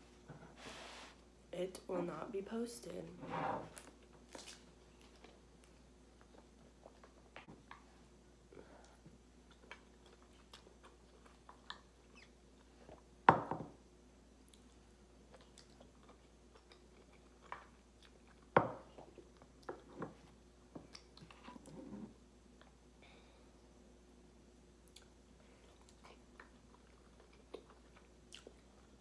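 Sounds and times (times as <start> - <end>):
chewing and wet mouth sounds: 3.8 - 8.1, 8.8 - 13.1, 14.4 - 21.8, 24.8 - 29.0.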